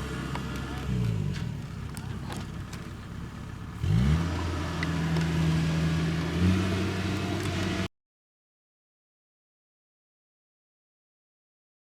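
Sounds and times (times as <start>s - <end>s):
diesel engine revving: 0.0s - 7.9s.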